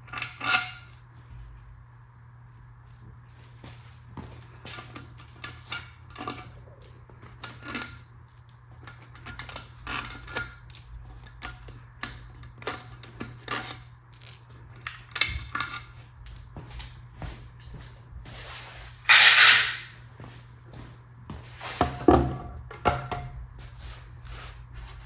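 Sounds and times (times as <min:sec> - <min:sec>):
metal tools clinking: 0:00.0 - 0:01.8, 0:02.5 - 0:16.6, 0:18.8 - 0:20.0
steady low hum: 0:00.0 - 0:25.0.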